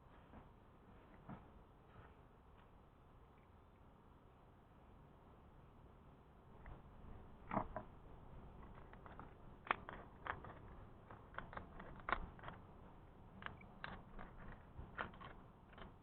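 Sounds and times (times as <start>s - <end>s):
small hard objects clicking: 7.4s - 16.0s.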